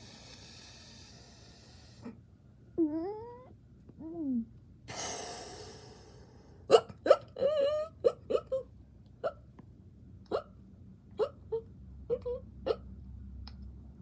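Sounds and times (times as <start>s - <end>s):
long puff of breath: 0.0s - 2.2s, 4.9s - 6.6s.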